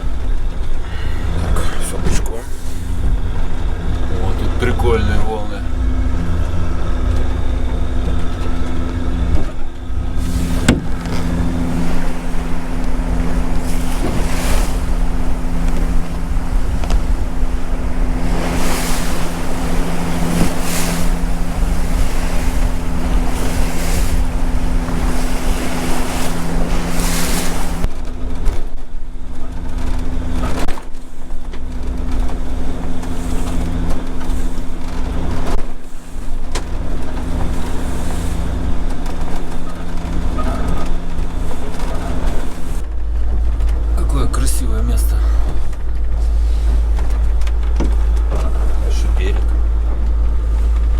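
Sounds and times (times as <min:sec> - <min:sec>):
wind rushing: 0:00.0 - 0:27.9
water rushing past: 0:00.0 - 0:28.0, 0:31.8 - 0:50.9
boat engine running: 0:00.0 - 0:50.9.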